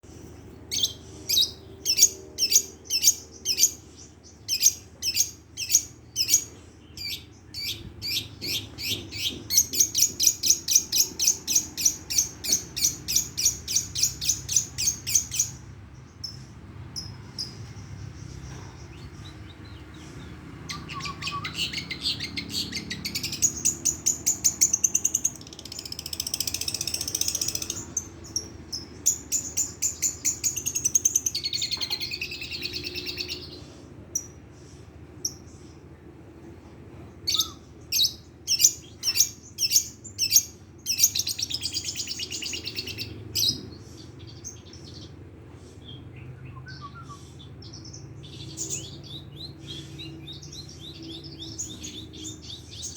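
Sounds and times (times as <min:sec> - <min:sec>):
shrike singing rolling trills: 0:00.1 - 0:36.2, 0:37.2 - 0:52.9.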